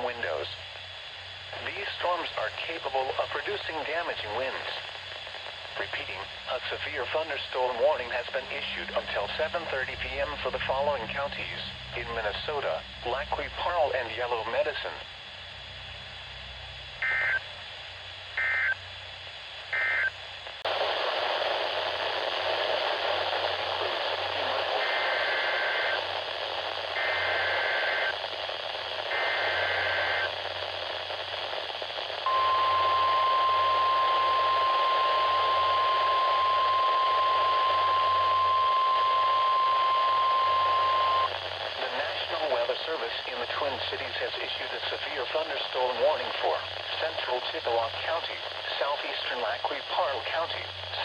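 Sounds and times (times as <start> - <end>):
radio hiss: 0.0 - 51.0
steady warning alarm tone: 32.3 - 41.3.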